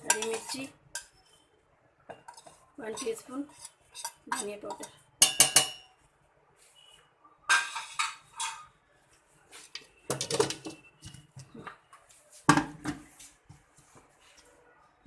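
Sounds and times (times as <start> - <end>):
spoon and dishes clinking: 0.0 - 1.4, 2.1 - 5.9, 7.5 - 8.7.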